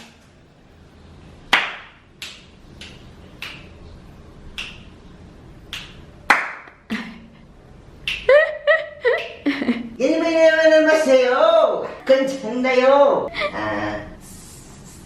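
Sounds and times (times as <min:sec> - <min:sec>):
slow hand clapping: 0:01.5 - 0:03.7, 0:04.6 - 0:04.9, 0:05.7 - 0:06.9, 0:08.0 - 0:08.4, 0:09.1 - 0:09.5.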